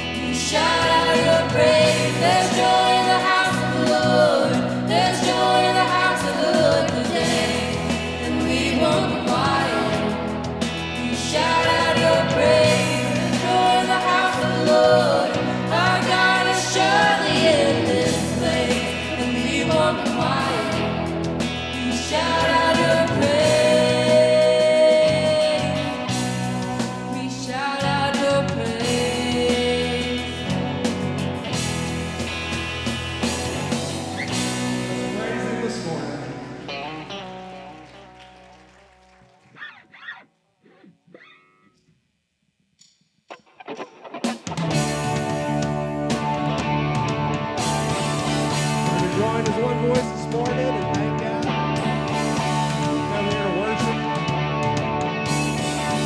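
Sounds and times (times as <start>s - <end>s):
congregation singing worship song: 0.0s - 32.6s, 33.2s - 37.8s, 47.6s - 56.0s
band accompaniment: 0.0s - 39.0s, 44.0s - 56.0s.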